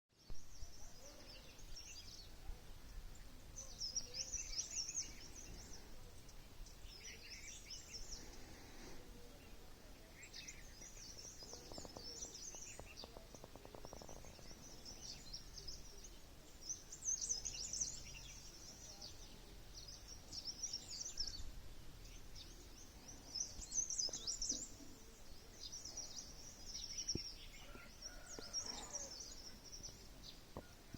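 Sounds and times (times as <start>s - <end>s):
faint steady hiss: 0.1s - 30.9s
songbirds chirping: 0.1s - 30.9s.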